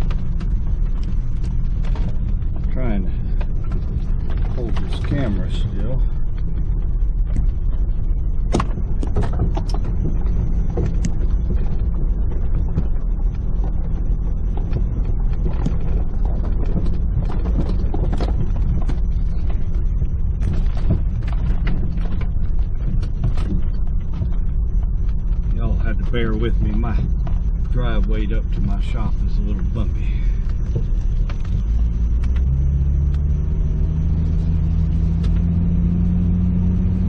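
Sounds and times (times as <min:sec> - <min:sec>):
car engine low rumble: 0:00.0 - 0:37.0
car interior rattling: 0:00.0 - 0:37.0.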